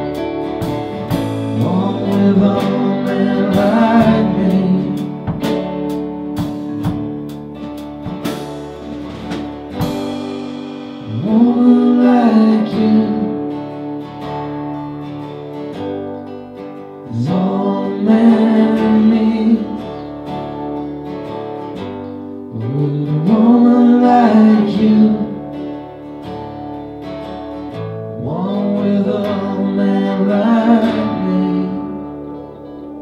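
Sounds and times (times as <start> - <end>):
person singing: 0.0 - 5.6, 9.8 - 14.0, 17.0 - 20.9, 22.5 - 25.8, 28.2 - 33.0
strummed acoustic guitar: 0.0 - 33.0.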